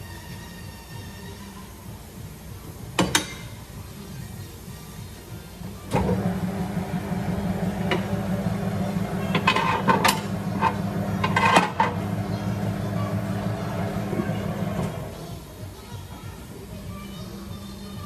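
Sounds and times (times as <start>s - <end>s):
car engine running: 6.0s - 15.2s.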